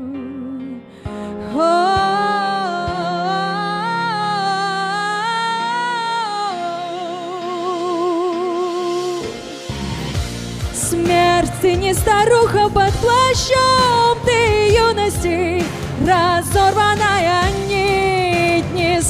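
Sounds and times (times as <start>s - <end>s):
woman singing wordless vocalise: 0.0s - 9.5s
instrumental backing music: 0.0s - 19.0s.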